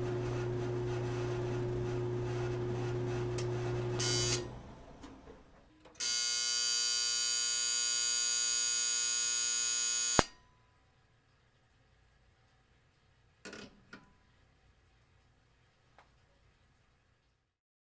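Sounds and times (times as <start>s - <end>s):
dryer buzzer: 0.0s - 4.6s, 6.0s - 10.4s.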